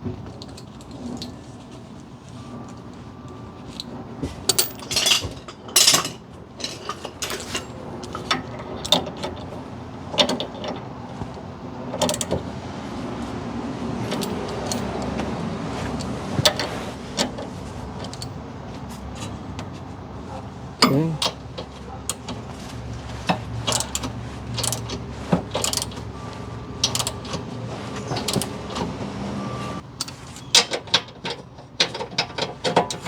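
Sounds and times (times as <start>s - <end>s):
metal tools clinking: 2.5s - 10.9s, 14.0s - 19.5s, 20.2s - 33.0s
ratchet wrench clicking: 23.6s - 26.0s, 26.8s - 27.2s.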